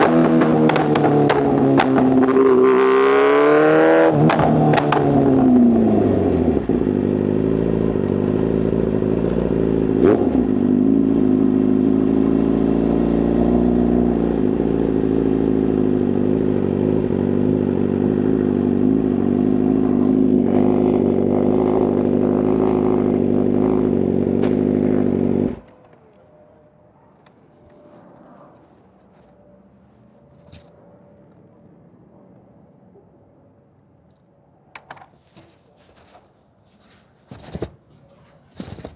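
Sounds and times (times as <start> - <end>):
motorcycle engine idling: 0.0 - 2.4, 4.2 - 25.7.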